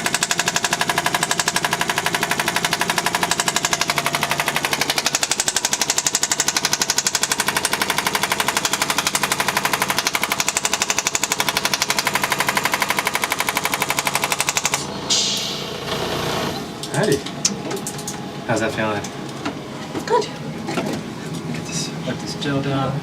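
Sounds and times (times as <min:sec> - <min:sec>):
short hiss: 0:15.1 - 0:15.7.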